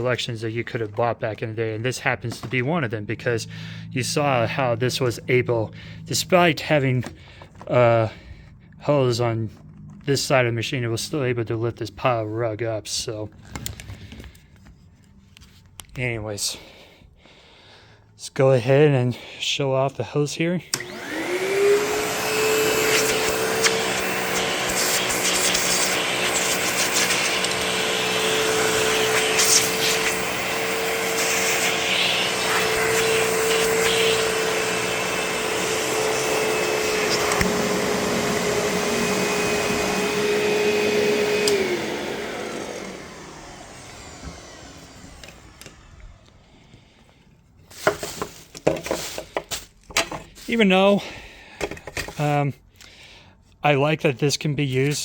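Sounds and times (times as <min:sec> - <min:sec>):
vacuum cleaner motor whine: 0:03.3 - 0:08.3, 0:20.7 - 0:46.9.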